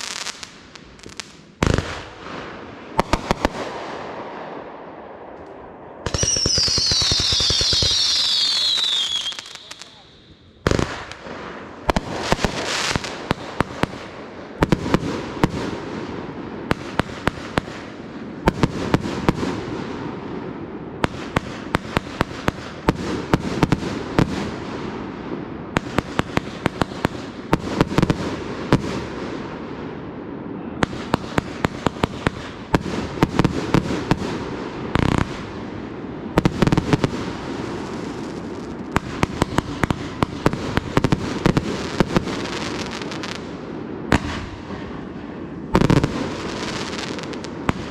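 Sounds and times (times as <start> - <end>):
crackling firework pops: 5.4 - 10.0, 44.1 - 44.9.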